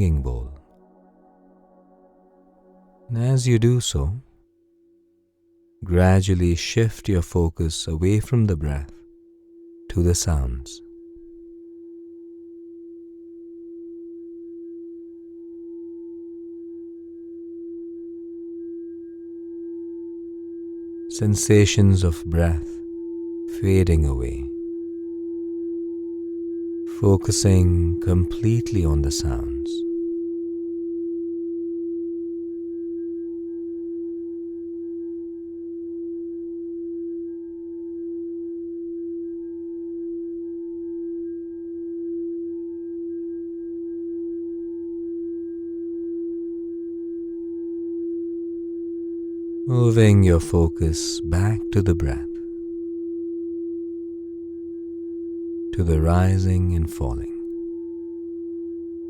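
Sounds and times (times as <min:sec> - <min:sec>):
singing bowl ringing: 0:11.0 - 0:21.1, 0:22.8 - 0:23.5, 0:24.6 - 0:26.9, 0:29.8 - 0:49.7, 0:57.6 - 0:59.0.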